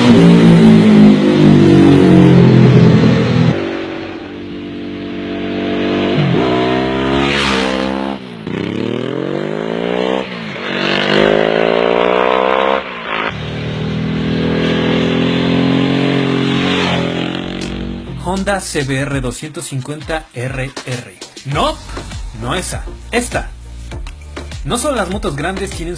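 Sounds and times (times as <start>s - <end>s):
motorcycle engine accelerating: 0.0s - 18.5s.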